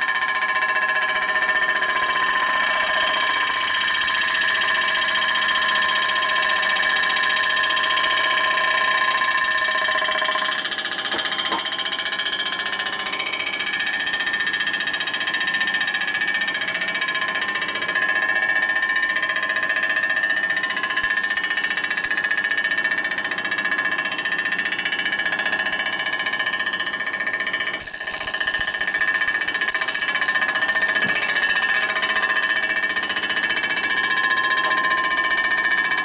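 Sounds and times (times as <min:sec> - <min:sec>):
cutter chattering on metal: 0:20.1 - 0:23.4, 0:26.9 - 0:36.0
high-pitched ringing: 0:27.8 - 0:36.0.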